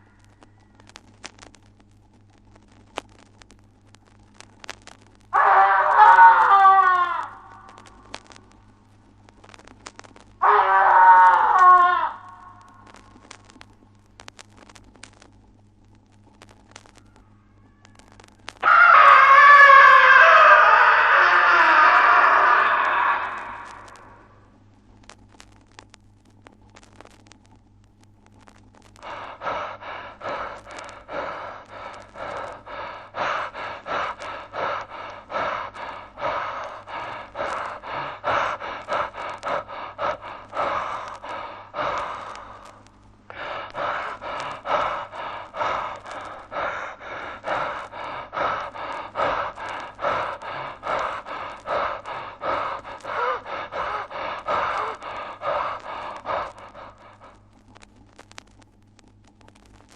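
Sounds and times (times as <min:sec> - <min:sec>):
person panting heavily: 0:29.0 - 0:42.7, 0:43.3 - 0:57.4.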